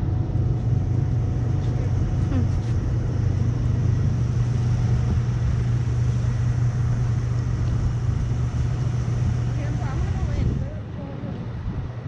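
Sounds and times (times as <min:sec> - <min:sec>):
cooling fan humming: 0:00.0 - 0:12.0
rushing air: 0:00.0 - 0:12.0.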